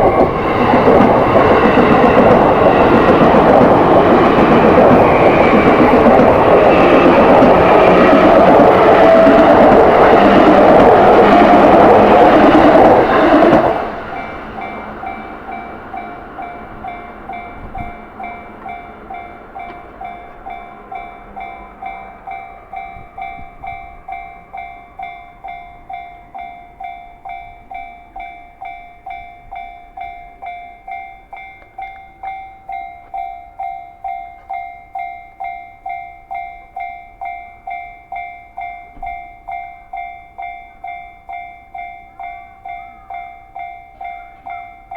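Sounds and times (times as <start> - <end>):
train rushing past: 0.0 - 26.0
crossing warning bell dinging: 0.0 - 44.9.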